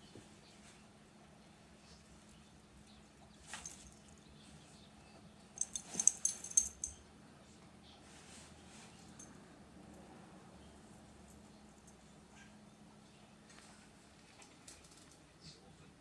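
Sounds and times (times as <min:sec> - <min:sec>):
light metallic clinks: 0:05.6 - 0:07.1.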